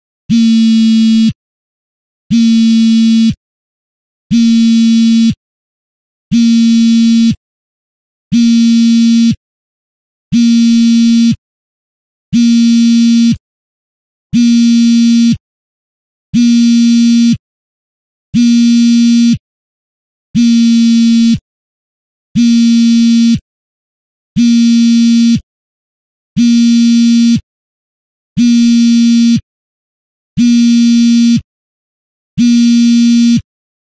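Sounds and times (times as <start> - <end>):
phone vibrating on fabric: 0.3 - 1.4, 2.3 - 3.4, 4.3 - 5.4, 6.3 - 7.4, 8.3 - 9.4, 10.3 - 11.4, 12.4 - 13.4, 14.4 - 15.4, 16.4 - 17.4, 18.4 - 19.4, 20.4 - 21.4, 22.4 - 23.4, 24.4 - 25.4, 26.4 - 27.4, 28.4 - 29.4, 30.4 - 31.5, 32.4 - 33.5.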